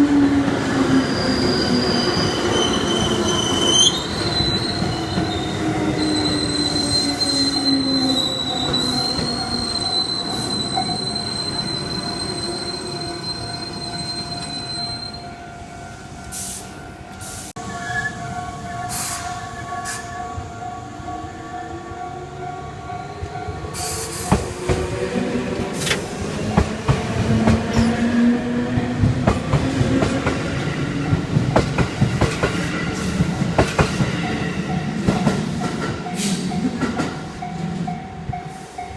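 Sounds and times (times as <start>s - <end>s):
high wheel squeal: 1.0s - 15.3s, 16.4s - 20.5s
rail-joint clacks: 23.2s - 28.1s, 28.8s - 38.9s.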